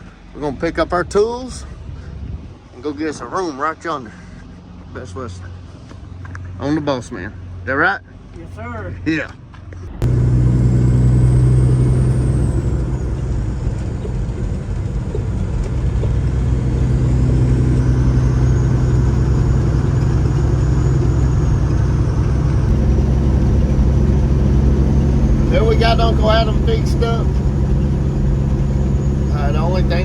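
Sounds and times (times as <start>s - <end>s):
diesel truck engine running: 9.8s - 30.0s.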